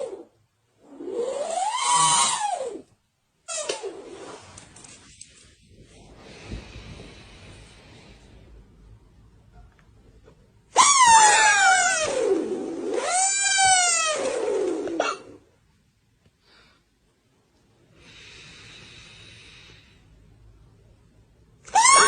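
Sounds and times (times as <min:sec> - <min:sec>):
cat yowling: 0:10.8 - 0:15.2.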